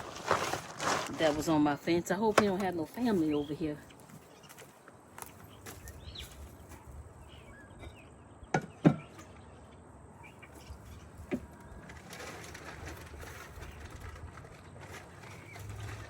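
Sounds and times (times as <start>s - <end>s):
rustling: 0.0s - 6.9s, 10.6s - 16.0s
knocks of objects handled: 7.8s - 9.3s.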